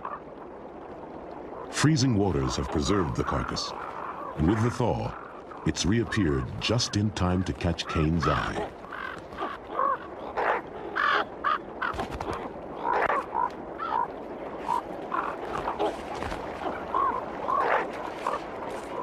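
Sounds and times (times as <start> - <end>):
crows cawing: 3.2 - 5.6, 7.8 - 19.0.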